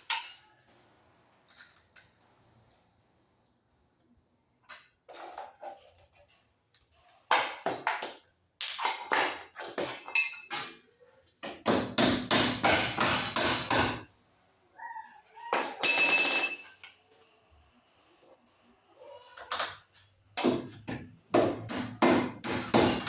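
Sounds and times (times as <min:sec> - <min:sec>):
hammer striking metal: 0:11.7 - 0:14.0, 0:21.4 - 0:23.0.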